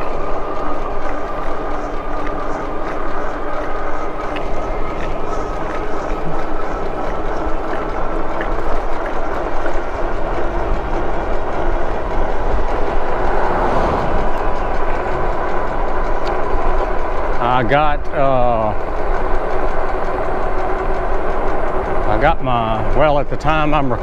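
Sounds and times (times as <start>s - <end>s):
hub motor whine: 0.0s - 24.0s
wind rush over microphone: 11.9s - 16.8s.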